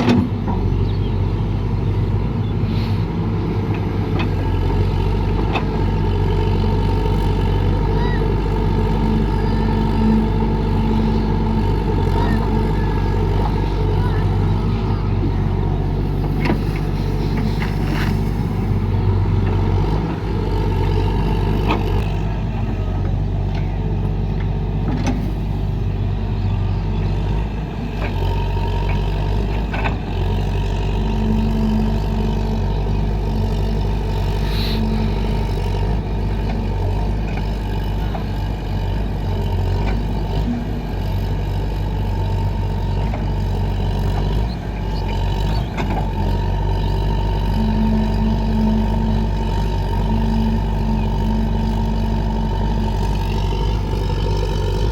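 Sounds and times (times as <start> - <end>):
excavator diesel engine running: 0.0 - 54.9
short hum: 34.4 - 35.2.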